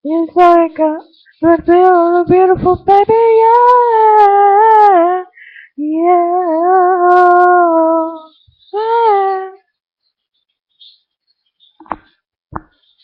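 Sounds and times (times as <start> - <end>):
woman singing unaccompanied: 0.0 - 9.7.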